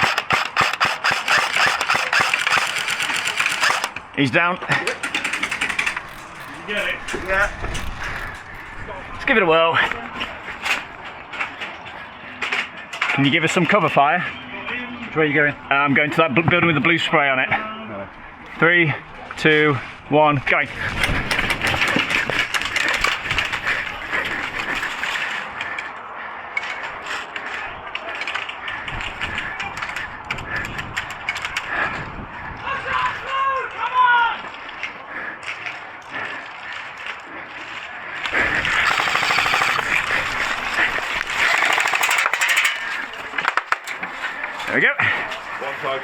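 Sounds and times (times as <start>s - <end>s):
rattling kit: 0.0s - 3.9s, 38.7s - 40.4s, 41.0s - 44.0s
airsoft guns firing bursts: 0.0s - 4.0s, 38.3s - 43.9s
dense clicking and crackling: 0.0s - 9.0s, 38.2s - 44.7s
running footsteps: 0.0s - 14.4s, 15.5s - 33.3s, 34.3s - 46.0s.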